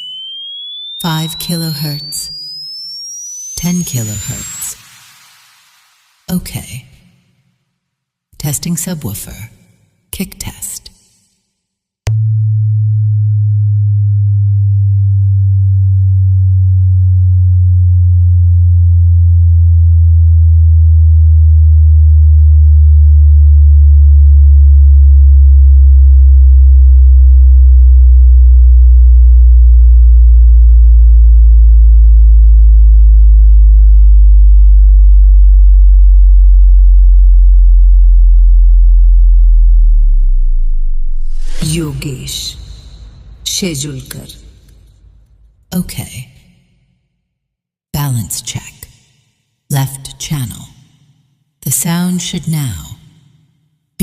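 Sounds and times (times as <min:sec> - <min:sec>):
deep bass tone sliding down: 0:12.1 - 0:45.3.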